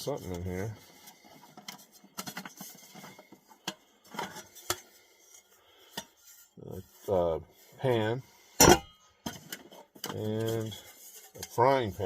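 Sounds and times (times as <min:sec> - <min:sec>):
rustling: 0:00.0 - 0:07.8, 0:09.2 - 0:12.0
metal pots and pans clinking: 0:01.6 - 0:05.0, 0:08.5 - 0:12.0.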